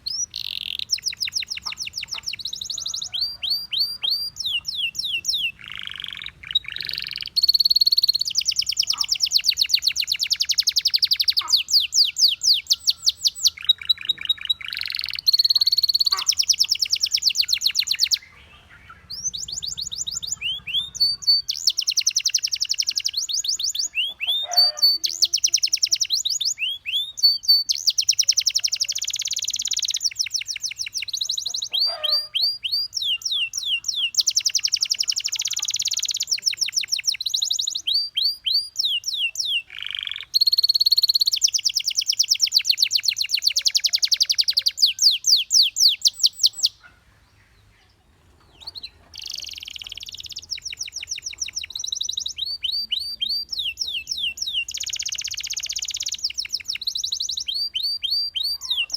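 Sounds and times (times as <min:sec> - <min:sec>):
canary singing trills: 0:00.0 - 0:58.9.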